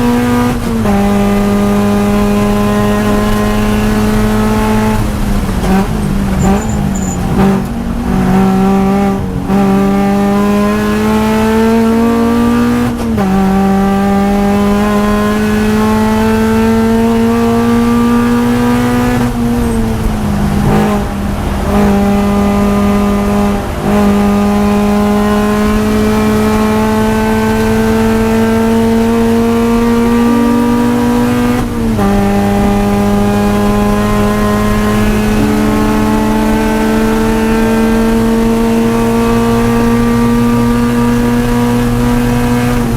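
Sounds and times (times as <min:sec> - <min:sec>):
car engine revving hard: 0:00.0 - 0:42.9.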